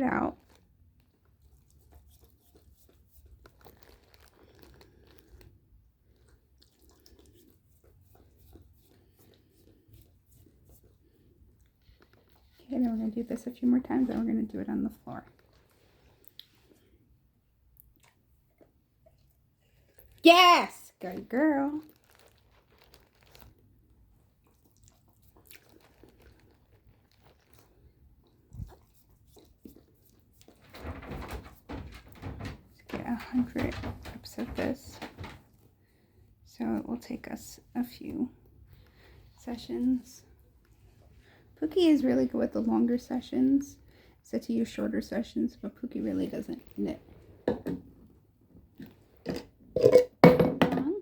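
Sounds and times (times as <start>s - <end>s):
faint rustling: 0.4s - 6.4s
dog chewing food: 0.4s - 12.6s, 21.9s - 30.7s.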